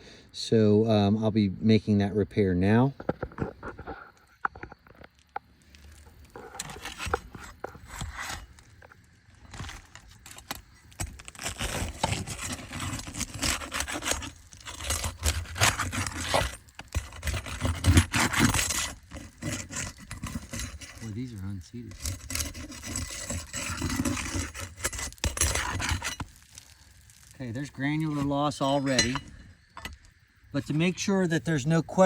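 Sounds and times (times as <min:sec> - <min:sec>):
roof shingles scraping: 0:05.6 - 0:29.2.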